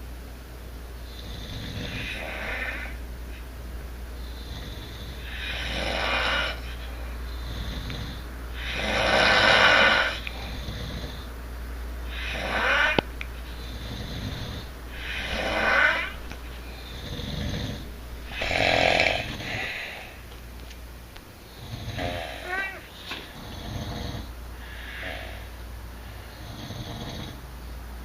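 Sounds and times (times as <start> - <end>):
person snoring: 1.0 - 3.0, 4.2 - 11.3, 12.1 - 13.0, 13.6 - 20.2, 21.5 - 25.5, 26.2 - 27.4
hissing breath: 12.0 - 20.3, 21.4 - 26.5.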